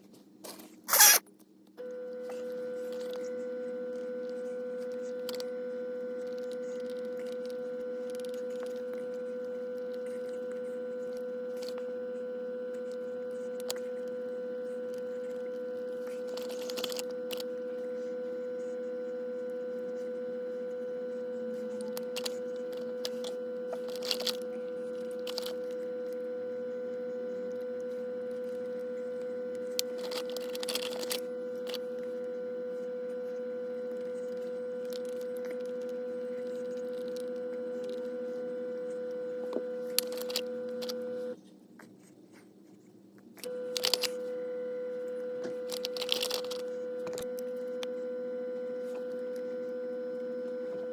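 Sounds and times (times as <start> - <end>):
steady hum: 0.0 - 50.9.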